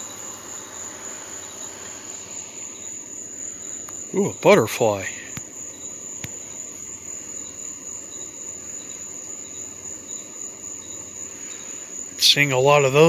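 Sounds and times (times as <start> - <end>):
insect chorus buzzing: 0.0 - 13.0.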